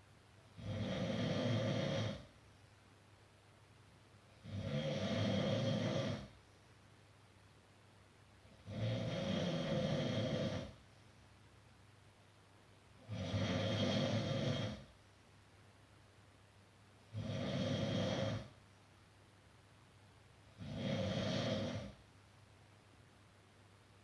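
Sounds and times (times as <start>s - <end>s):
person snoring: 0.6s - 2.3s, 4.4s - 6.4s, 8.6s - 10.8s, 13.0s - 14.9s, 17.1s - 18.5s, 20.6s - 22.0s.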